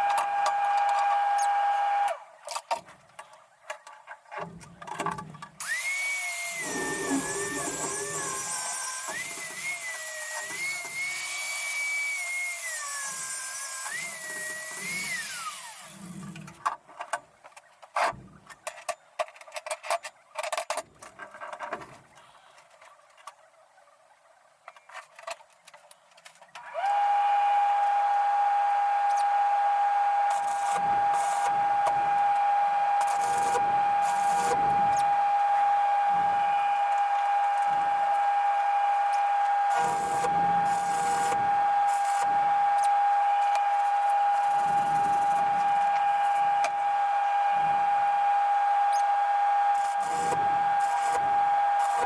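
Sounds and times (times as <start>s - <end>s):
power tool motor whining: 0.0s - 2.3s, 5.6s - 16.4s, 26.6s - 52.0s
motor running at high pitch: 5.6s - 16.2s, 26.8s - 52.0s.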